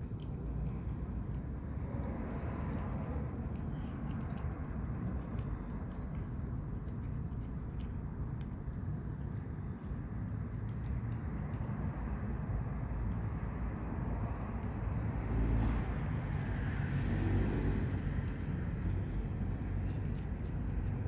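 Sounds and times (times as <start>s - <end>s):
street traffic rumbling: 0.0s - 21.0s
vehicle passing: 0.4s - 6.7s, 11.0s - 21.0s.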